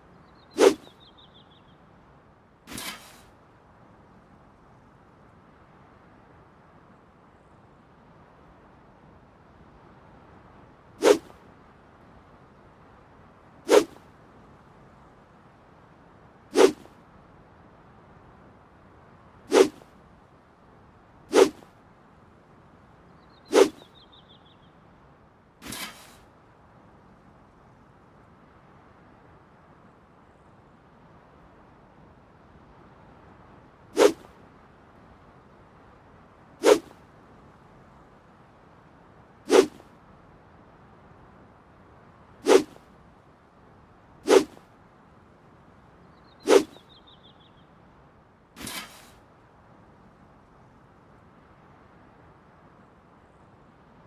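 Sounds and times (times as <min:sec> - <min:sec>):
sword whooshing through air: 0:00.6 - 0:01.0, 0:02.7 - 0:03.3, 0:11.0 - 0:11.4, 0:13.7 - 0:14.0, 0:16.5 - 0:16.9, 0:19.5 - 0:19.9, 0:21.3 - 0:21.7, 0:23.5 - 0:23.9, 0:25.6 - 0:26.3, 0:34.0 - 0:34.4, 0:36.6 - 0:37.0, 0:39.5 - 0:39.9, 0:42.4 - 0:42.8, 0:44.2 - 0:44.6, 0:46.4 - 0:46.8, 0:48.6 - 0:49.2.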